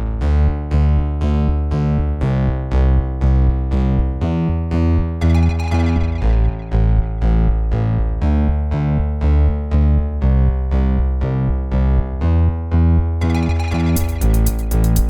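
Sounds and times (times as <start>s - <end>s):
deep bass line: 0.0s - 15.0s
keyboard notes: 5.2s - 7.3s, 13.2s - 15.0s.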